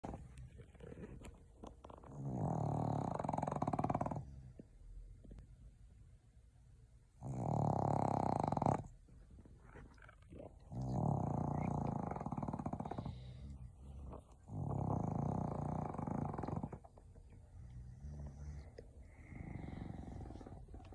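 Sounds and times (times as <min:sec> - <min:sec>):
loud snoring: 0:02.1 - 0:04.4, 0:07.2 - 0:08.9, 0:10.7 - 0:13.7, 0:14.5 - 0:16.8, 0:17.6 - 0:20.9
quiet breathing: 0:08.4 - 0:20.9.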